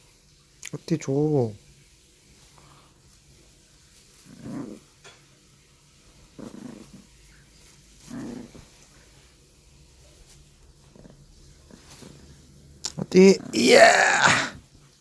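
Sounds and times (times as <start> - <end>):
puppy growling low: 4.2 - 4.9, 6.4 - 7.1, 8.0 - 8.6.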